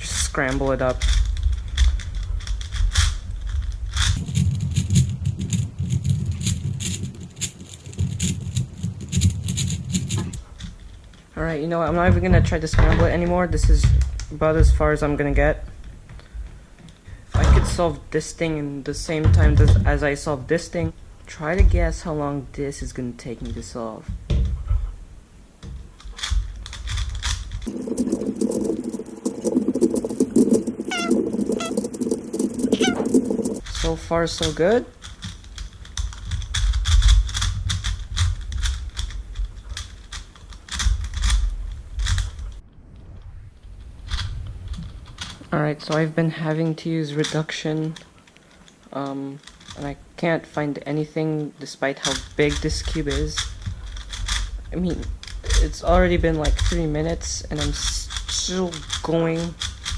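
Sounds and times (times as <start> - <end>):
puzzle cube plastic clacks: 4.2 - 10.4, 27.7 - 33.6.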